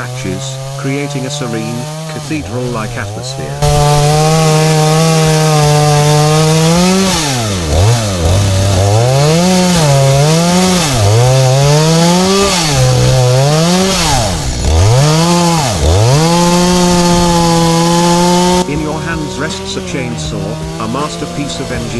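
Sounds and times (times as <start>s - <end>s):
chainsaw cutting wood: 0.0s - 21.9s.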